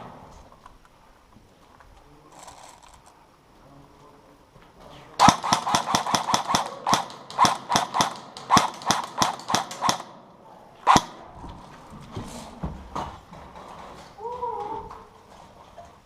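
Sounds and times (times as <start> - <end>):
airsoft gun shots: 5.2 - 11.4.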